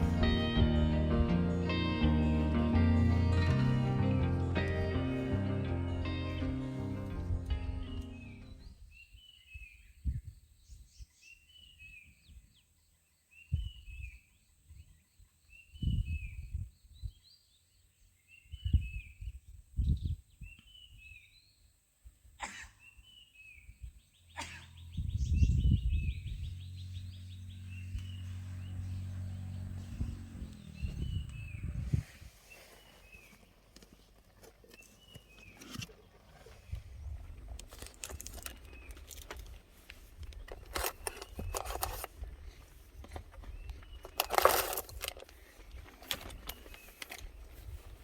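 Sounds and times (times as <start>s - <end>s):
steady low hum: 24.8s - 32.0s.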